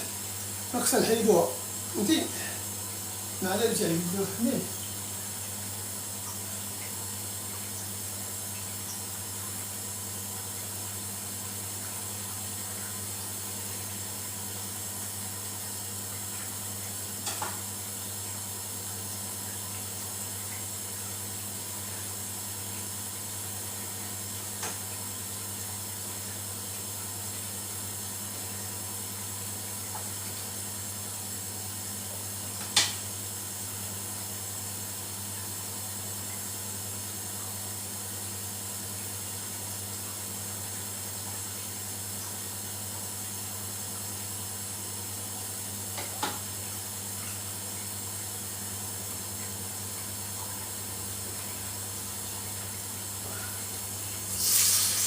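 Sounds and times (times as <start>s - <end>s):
steady hiss: 54.0s - 55.0s.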